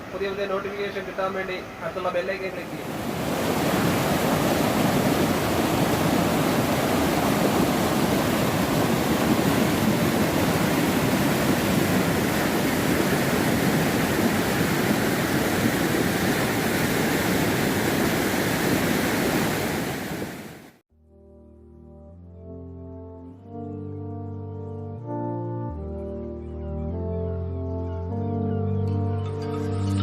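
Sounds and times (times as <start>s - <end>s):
waterfall rushing: 1.8s - 20.8s.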